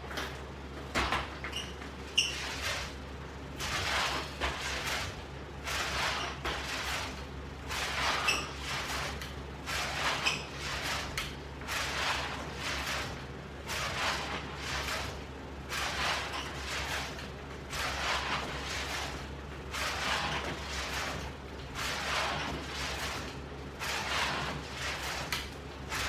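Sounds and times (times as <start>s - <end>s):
ab roller wheel rolling on floor: 0.0s - 3.0s, 3.6s - 26.0s.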